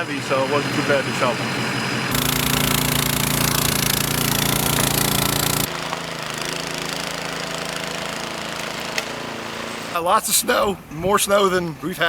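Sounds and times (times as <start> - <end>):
engine running with pulsing beat: 2.1 - 5.7.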